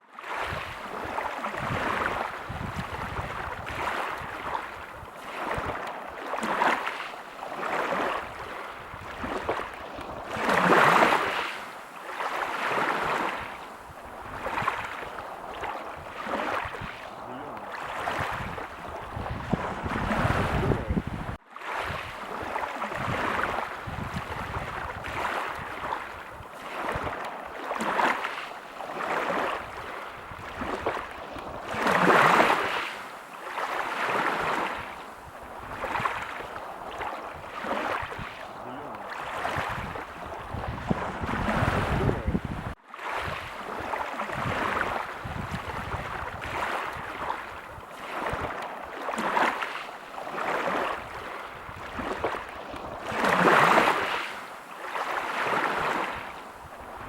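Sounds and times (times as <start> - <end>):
ocean surf breaking: 0.2 - 57.0.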